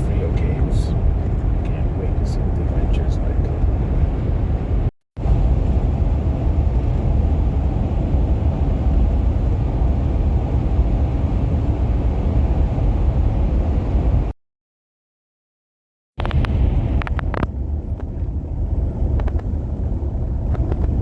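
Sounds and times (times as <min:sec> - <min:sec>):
steady low rumbling: 0:00.0 - 0:14.3, 0:16.2 - 0:21.0.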